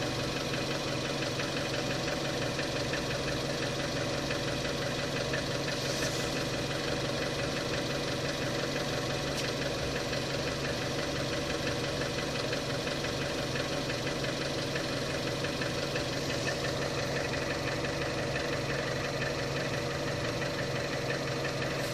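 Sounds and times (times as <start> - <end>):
car engine idling: 0.0 - 21.9.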